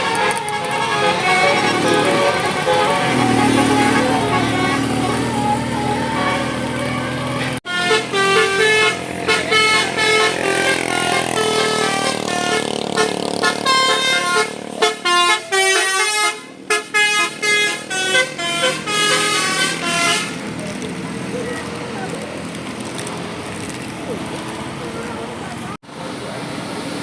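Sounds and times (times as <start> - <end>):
musical bus horn playing melody: 0.0 - 20.6
bus engine: 0.0 - 27.0.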